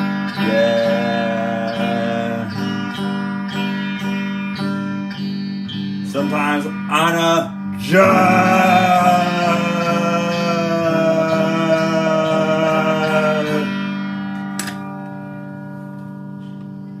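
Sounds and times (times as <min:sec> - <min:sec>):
strummed guitar: 0:00.0 - 0:17.0
long held note: 0:07.8 - 0:15.6
sharp click: 0:14.6 - 0:14.9.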